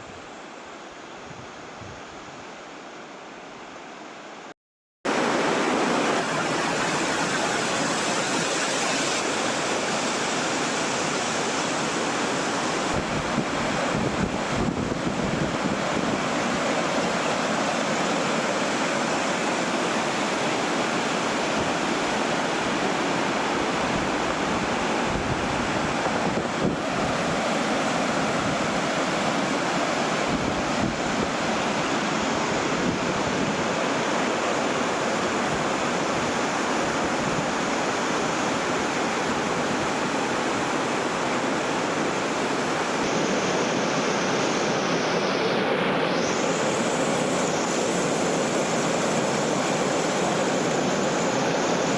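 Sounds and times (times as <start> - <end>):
stream water rushing: 5.1 - 51.9.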